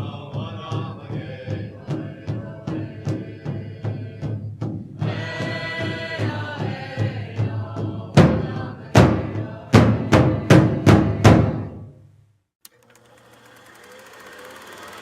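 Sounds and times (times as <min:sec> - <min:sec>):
group chanting: 0:00.0 - 0:04.4, 0:05.0 - 0:11.6
steady drum beat: 0:00.0 - 0:11.7
loud hard drum strokes: 0:00.0 - 0:11.9.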